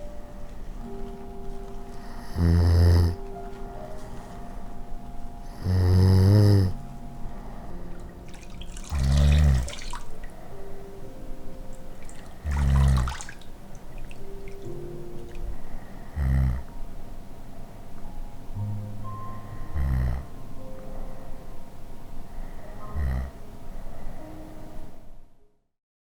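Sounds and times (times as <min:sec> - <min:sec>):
person snoring: 0:02.0 - 0:03.3, 0:05.4 - 0:06.8, 0:08.9 - 0:09.8, 0:12.4 - 0:13.2, 0:16.0 - 0:16.8, 0:19.6 - 0:20.4, 0:22.8 - 0:23.4.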